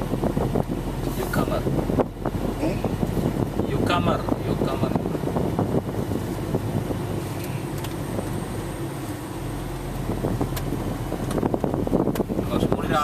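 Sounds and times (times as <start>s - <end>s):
road noise: 0.0s - 13.0s
vehicle engine: 0.0s - 13.0s.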